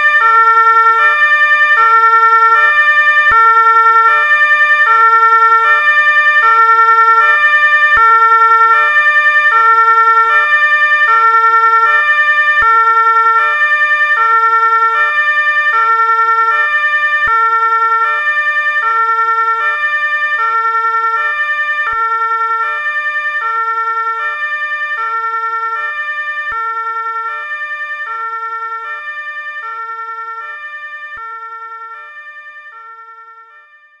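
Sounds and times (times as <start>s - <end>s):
ambulance two-tone siren: 0.0s - 34.0s.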